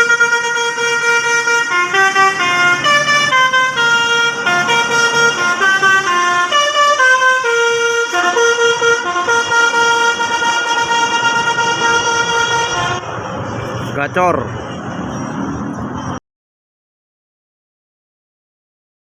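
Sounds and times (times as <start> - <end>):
electric musical horn playing tune: 0.0 - 13.0.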